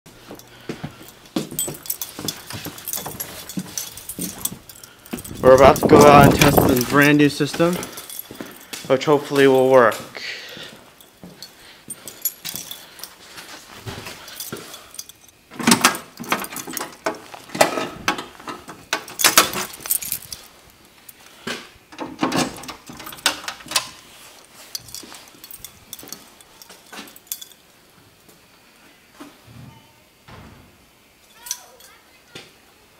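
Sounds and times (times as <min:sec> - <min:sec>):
small hard objects clinking: 0:01.5 - 0:08.7, 0:16.1 - 0:21.4.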